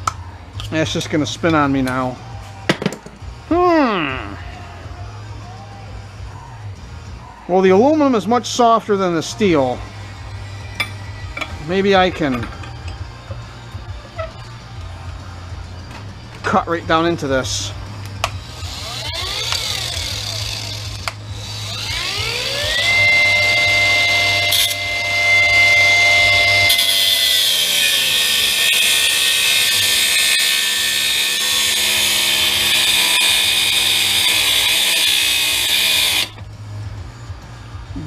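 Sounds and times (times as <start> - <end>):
power cutting tool whining: 16.3 - 36.4
hissing cutting into metal: 18.4 - 36.4.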